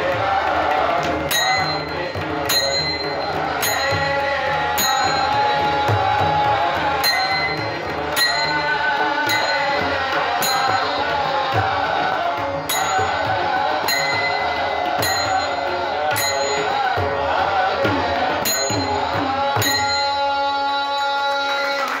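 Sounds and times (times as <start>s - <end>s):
devotional music with drums: 0.0s - 22.0s.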